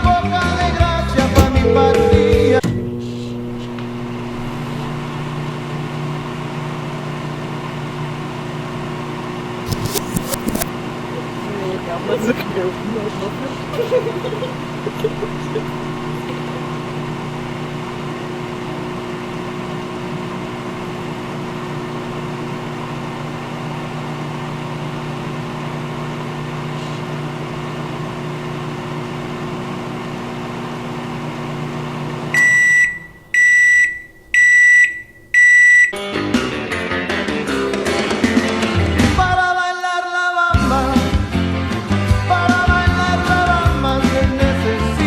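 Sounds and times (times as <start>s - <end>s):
microwave oven humming: 0.0s - 39.5s, 40.6s - 45.0s
microwave beeps: 1.4s - 4.3s, 32.3s - 36.2s.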